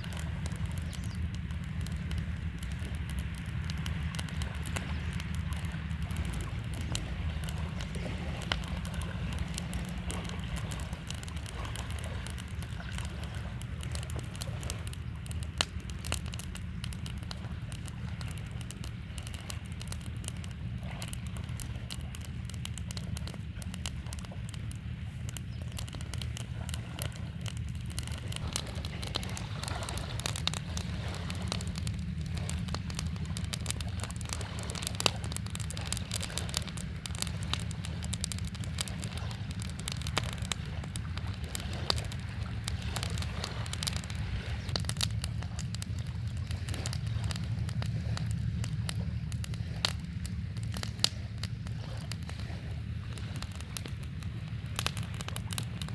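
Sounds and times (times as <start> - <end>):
campfire crackling and popping: 0.0 - 55.9
river flowing: 25.6 - 47.8.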